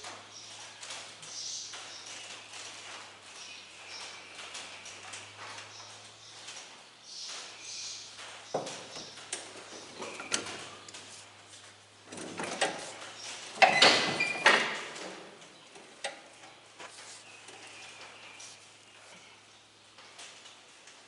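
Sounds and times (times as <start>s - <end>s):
knocks and clanks: 8.2s - 11.1s, 12.1s - 16.6s.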